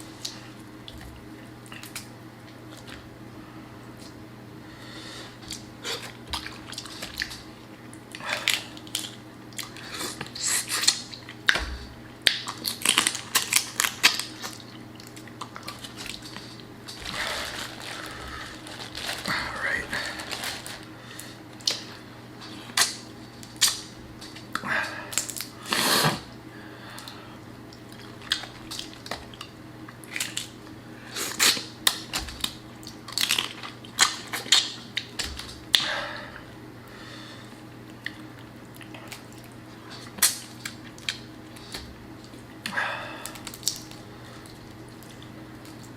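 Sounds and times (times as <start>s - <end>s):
wet chewing and lip smacking: 5.4s - 11.6s, 37.7s - 42.8s
shells cracking while peeled: 12.2s - 19.3s, 22.7s - 25.8s, 31.3s - 35.9s, 37.8s - 45.9s.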